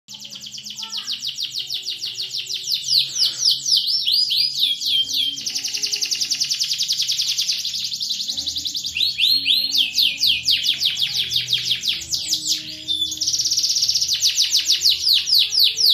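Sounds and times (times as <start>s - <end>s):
canary singing: 0.1s - 15.9s.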